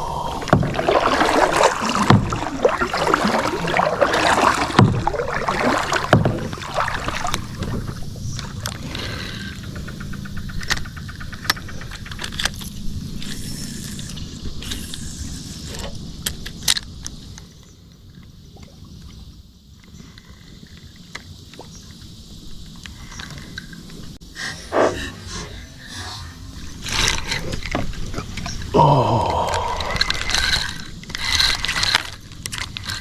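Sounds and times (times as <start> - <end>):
water splashing against kayak: 0.0 - 10.2
fine rattle: 4.5 - 14.0.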